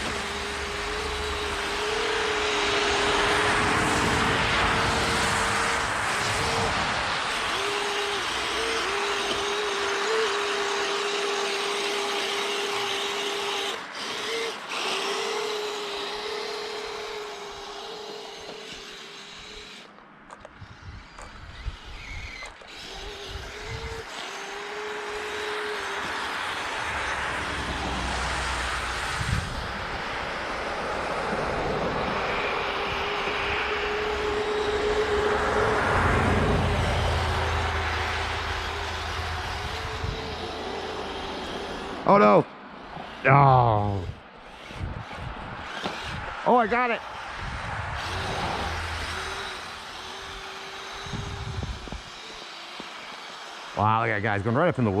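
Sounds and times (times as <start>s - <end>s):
rushing noise: 0.0s - 8.4s, 26.6s - 42.1s, 44.6s - 50.4s
electric motors whining: 0.0s - 55.0s
low rumble: 47.4s - 50.0s.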